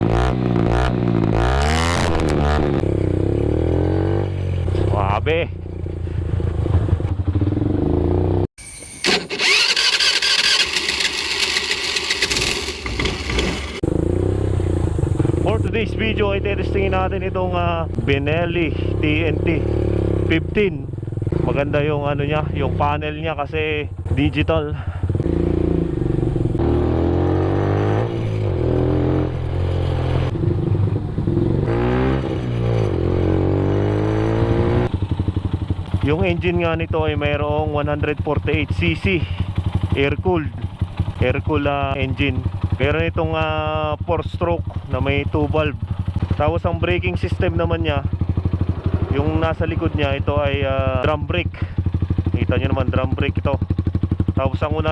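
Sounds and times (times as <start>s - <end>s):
motorcycle engine idling: 2.8s - 8.5s, 10.4s - 26.7s, 28.4s - 31.7s, 34.3s - 54.9s
hissy engine whine: 13.9s - 15.7s.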